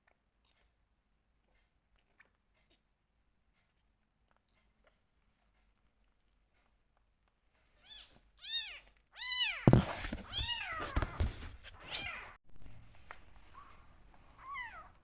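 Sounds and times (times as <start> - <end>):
knocks and rustling: 9.6 - 13.3.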